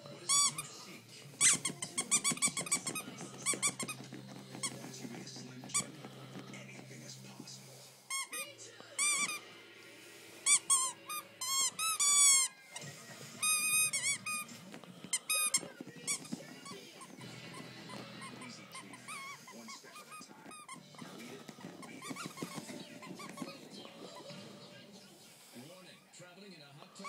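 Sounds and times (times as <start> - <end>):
rubber squeaky toy squeaking: 0.2 - 0.8, 1.4 - 6.6, 8.1 - 9.4, 10.4 - 24.7.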